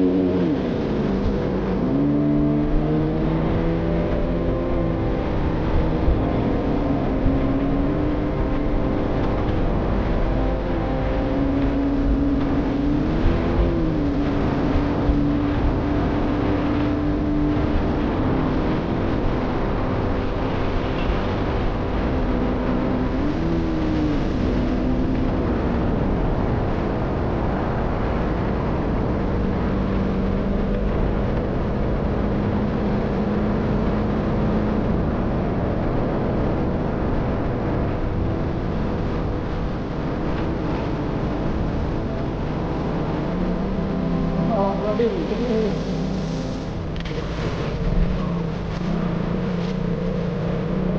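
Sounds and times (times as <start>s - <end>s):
motorcycle engine running: 0.0s - 50.9s
wind rush on microphone: 0.0s - 50.9s.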